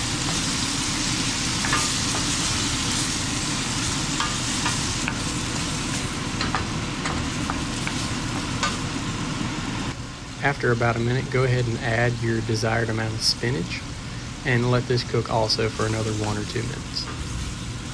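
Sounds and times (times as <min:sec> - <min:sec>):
food sizzling in butter: 0:00.0 - 0:09.9, 0:10.6 - 0:17.9.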